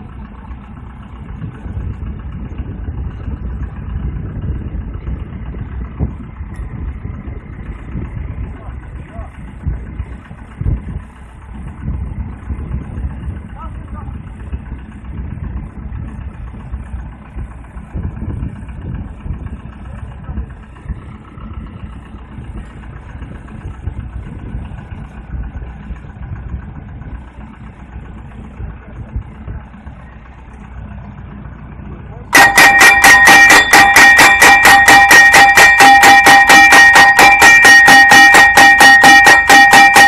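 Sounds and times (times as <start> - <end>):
engine rumble: 0.0 - 40.0.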